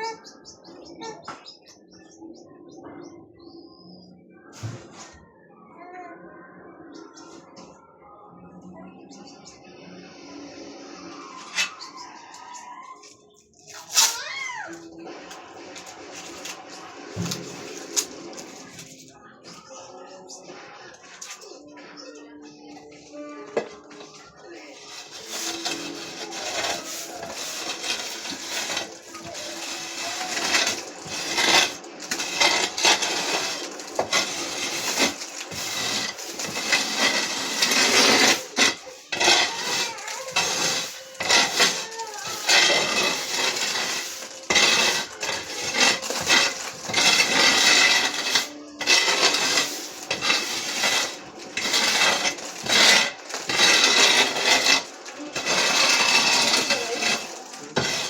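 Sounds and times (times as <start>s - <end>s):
metal clattering and scraping: 15.3s - 19.7s, 23.7s - 58.0s.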